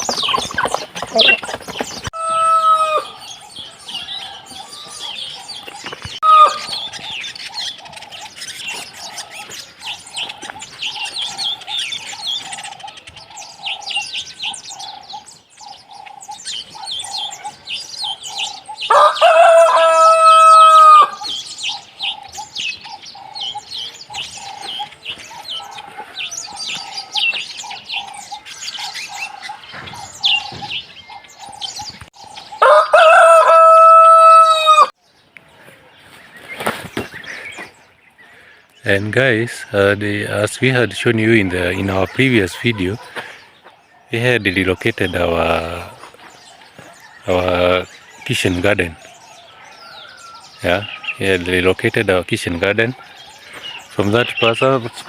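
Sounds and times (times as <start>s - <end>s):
poultry calls: 0.0s - 55.0s
small birds chirping: 0.0s - 55.0s
rooster crowing: 2.1s - 5.3s, 6.2s - 6.8s, 18.8s - 21.3s, 32.6s - 35.0s.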